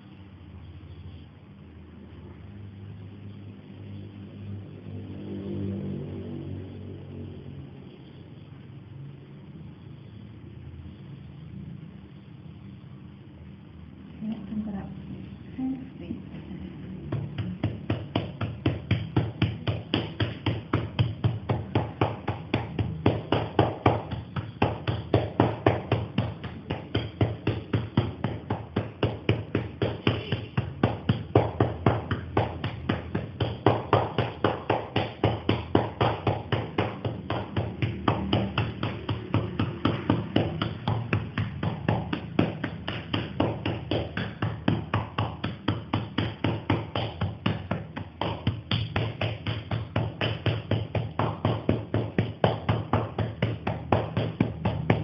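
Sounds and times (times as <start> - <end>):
hand patting a back: 17.0 - 55.0.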